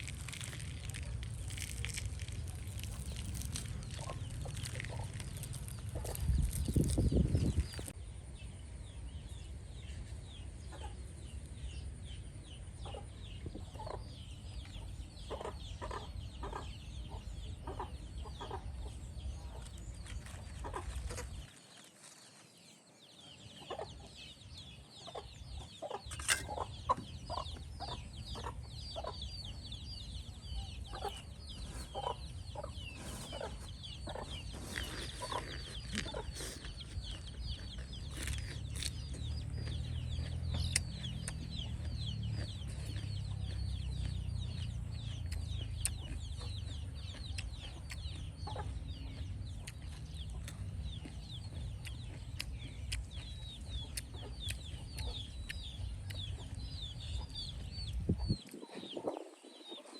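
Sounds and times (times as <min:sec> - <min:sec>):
chickens clucking: 0:00.0 - 0:08.0, 0:10.5 - 0:12.0, 0:12.6 - 0:22.2, 0:23.4 - 0:59.9.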